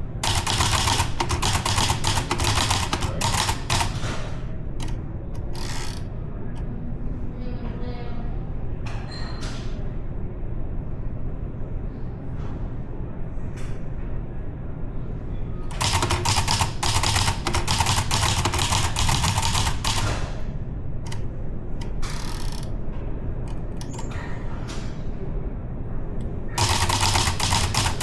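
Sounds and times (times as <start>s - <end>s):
typewriter keys striking: 0.2s - 4.2s, 4.8s - 6.0s, 15.7s - 20.2s, 26.6s - 28.0s.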